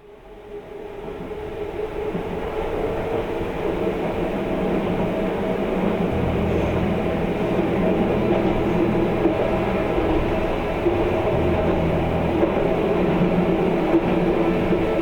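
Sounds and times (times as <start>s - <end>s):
electric train rumbling: 0.0s - 15.0s.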